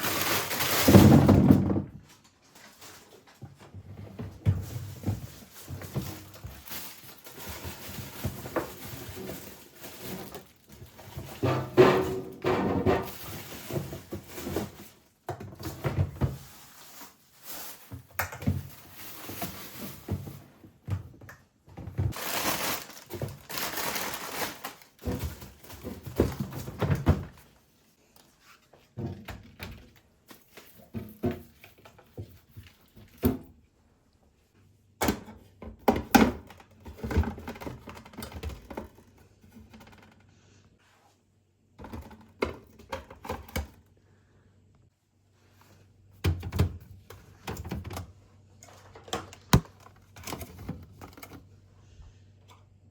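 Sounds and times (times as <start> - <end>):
household items thunking and knocking: 0.8 - 2.1, 3.4 - 16.5, 17.9 - 24.1, 25.0 - 27.5, 49.4 - 50.8
rustling: 22.1 - 25.8.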